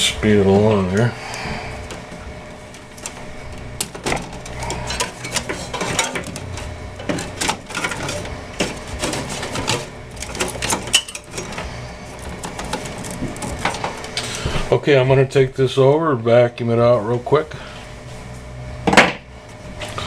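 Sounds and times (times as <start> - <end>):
cables and plastic connectors rattling: 0.5 - 14.5.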